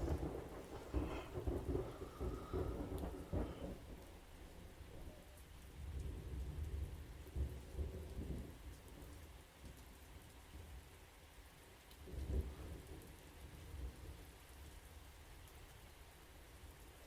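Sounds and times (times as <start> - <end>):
thunder rumbling: 0.0 - 8.6
steady rain: 0.0 - 17.0.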